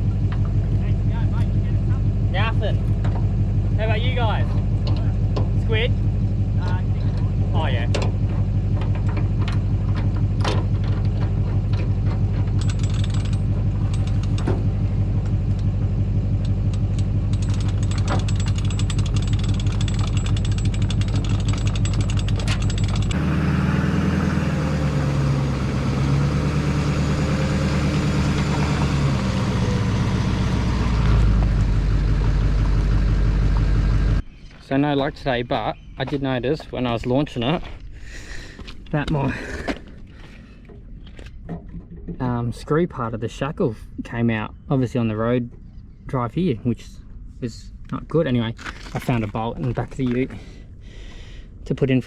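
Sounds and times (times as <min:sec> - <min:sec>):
engine running with fast pulse: 0:00.0 - 0:34.2
engine with wavering pitch: 0:00.0 - 0:34.4.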